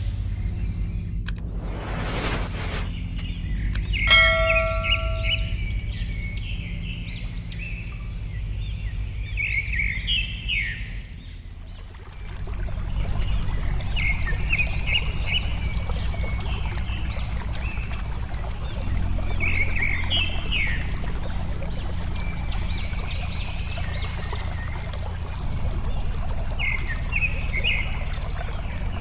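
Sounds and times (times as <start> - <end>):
water flowing: 1.2 - 5.7, 11.4 - 29.0
songbirds chirping: 2.9 - 29.0
bell-like ring: 4.1 - 5.8.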